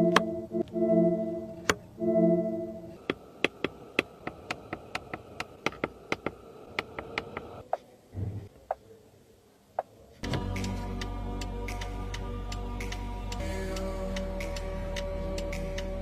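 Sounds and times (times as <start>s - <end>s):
music with ticking beat: 0.0s - 1.3s, 10.3s - 16.0s
faint steady tone: 0.0s - 3.0s.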